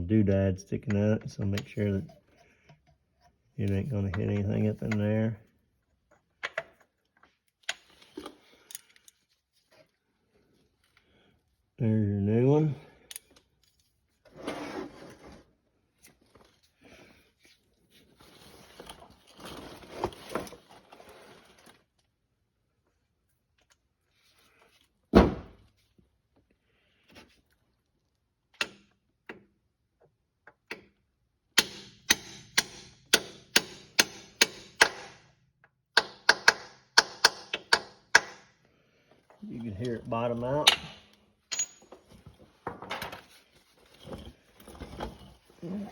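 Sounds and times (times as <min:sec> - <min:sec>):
tool handling: 0:39.3 - 0:45.9.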